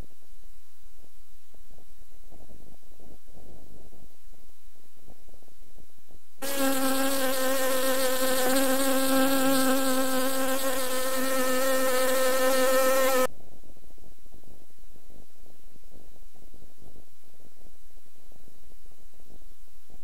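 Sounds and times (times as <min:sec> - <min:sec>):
insect buzzing: 0:06.4 - 0:13.3.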